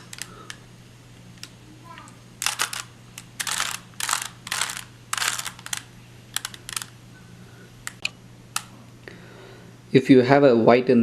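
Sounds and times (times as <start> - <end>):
plastic puzzle cube clicking: 2.4 - 6.9.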